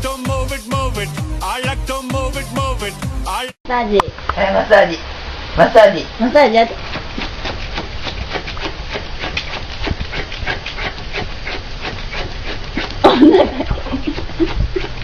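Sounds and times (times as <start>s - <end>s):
dog panting: 6.9s - 13.1s
dog vocal sound: 6.9s - 15.0s.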